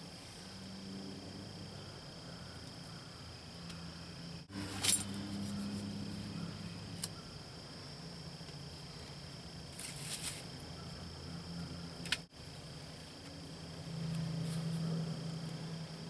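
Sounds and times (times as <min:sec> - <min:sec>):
loud rustle: 0:09.7 - 0:10.5.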